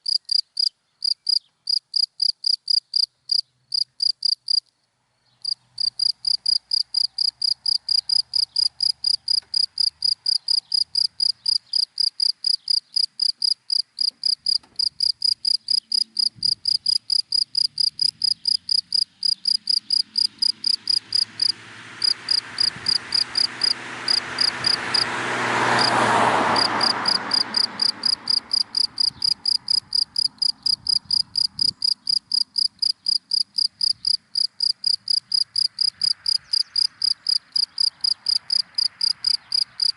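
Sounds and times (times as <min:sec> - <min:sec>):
cricket chirping: 0:00.0 - 0:04.7, 0:05.4 - 0:39.9
car passing by: 0:05.6 - 0:11.6, 0:17.6 - 0:31.7, 0:35.2 - 0:39.9.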